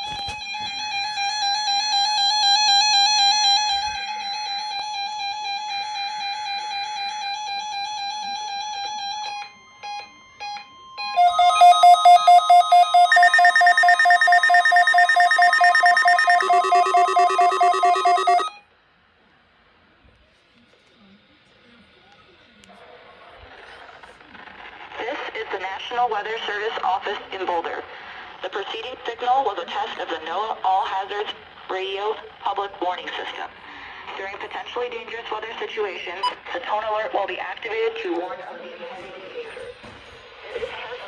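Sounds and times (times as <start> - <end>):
rapidly beeping alarm: 0.1 - 18.6
steady warning tone: 9.0 - 18.6
warbling electronic alarm tone: 10.9 - 18.6
short beeps: 11.2 - 18.6.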